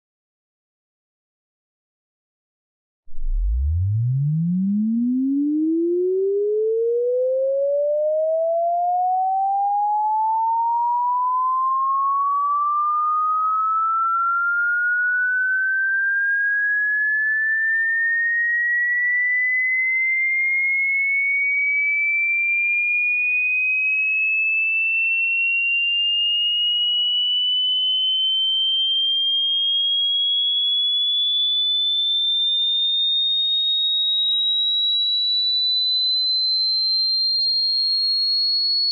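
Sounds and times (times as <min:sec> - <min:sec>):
sine tone sweeping upward: 0:03.1 - 0:19.9, 0:26.5 - 0:36.9.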